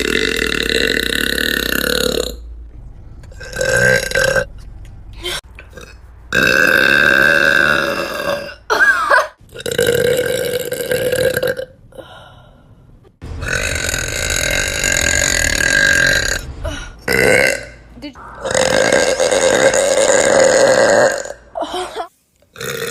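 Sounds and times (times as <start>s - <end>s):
woman burping: 7.8s - 11.7s, 18.4s - 22.9s.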